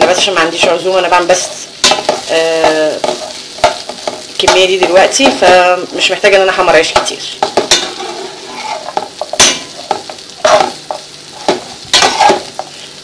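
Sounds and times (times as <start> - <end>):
bread frying and sizzling: 0.0 - 13.0
utensil scraping metal tray: 7.6 - 10.8, 11.4 - 12.5.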